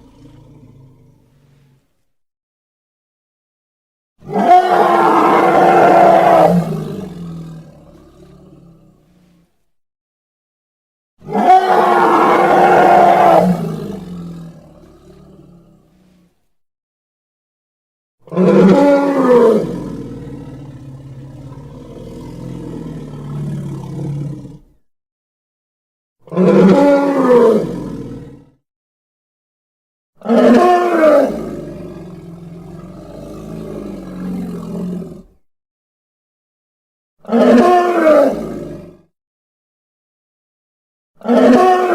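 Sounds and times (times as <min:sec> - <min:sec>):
dinosaur roar: 0:00.0 - 0:01.8, 0:04.2 - 0:09.5, 0:11.2 - 0:16.3, 0:18.3 - 0:24.8, 0:26.3 - 0:28.6, 0:30.2 - 0:35.4, 0:37.2 - 0:39.1, 0:41.3 - 0:41.9.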